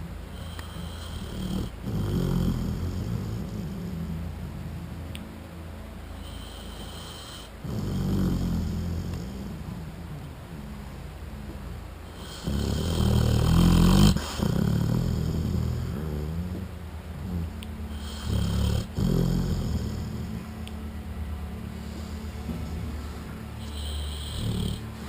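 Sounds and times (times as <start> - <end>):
dog snoring: 0.0 - 5.2, 6.2 - 20.7, 21.7 - 25.0.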